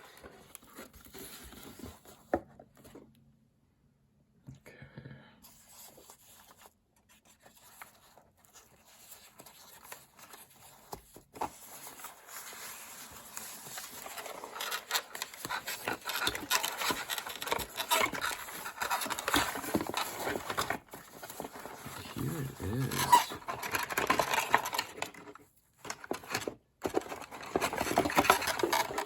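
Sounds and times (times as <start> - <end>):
packaging rustling and crinkling: 5.8 - 29.0.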